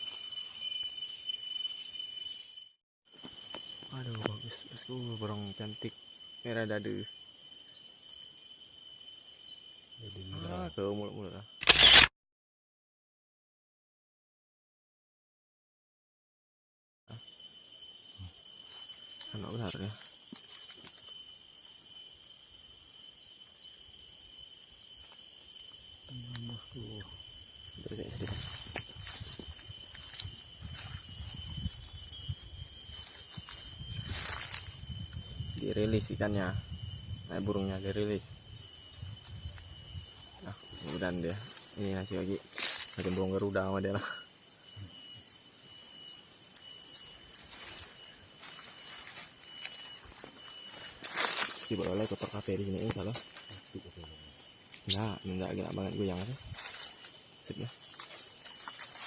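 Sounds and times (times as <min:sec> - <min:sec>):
insects droning: 0:00.0 - 0:12.1, 0:17.1 - 0:59.0
small birds chirping: 0:03.4 - 0:08.6, 0:25.4 - 0:59.0.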